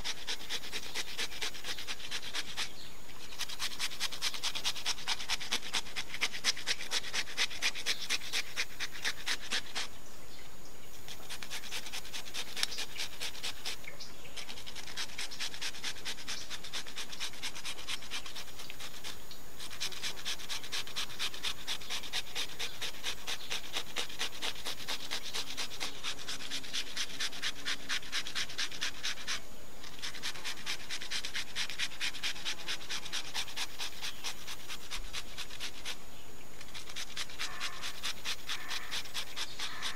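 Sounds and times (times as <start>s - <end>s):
cucumber being grated: 3.3s - 9.9s, 14.4s - 36.0s, 36.7s - 39.9s.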